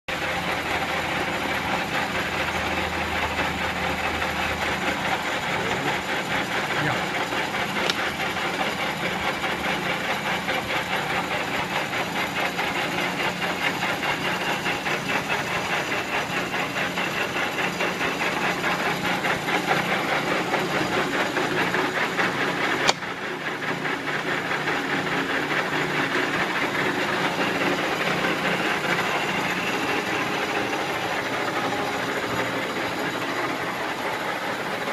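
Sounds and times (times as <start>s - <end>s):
lathe whirring and rattling: 0.1s - 34.9s
sharp click: 22.8s - 23.1s.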